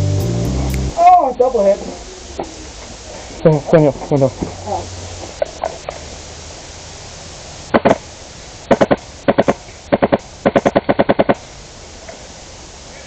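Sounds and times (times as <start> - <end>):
airsoft gun firing bursts: 8.7 - 11.4.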